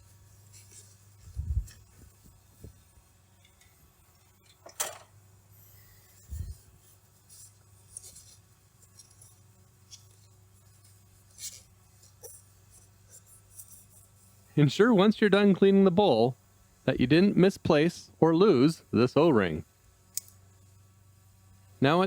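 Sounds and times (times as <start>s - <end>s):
paper towel rubbing and rustling: 0.0s - 2.9s
steady low hum: 0.0s - 22.0s.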